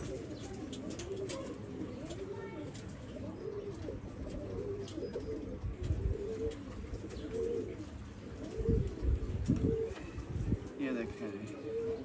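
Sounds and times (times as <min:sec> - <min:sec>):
pigeons cooing: 0:00.0 - 0:12.0.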